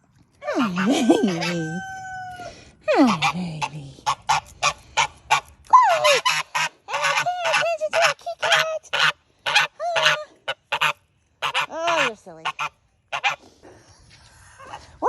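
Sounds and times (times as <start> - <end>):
goose honking: 4.0 - 13.4.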